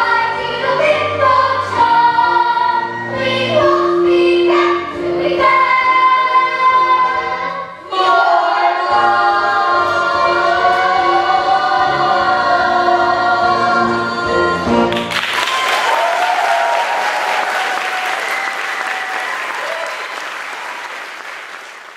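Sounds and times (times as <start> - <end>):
young voices singing: 0.0 - 14.9
audience applause: 14.9 - 21.9.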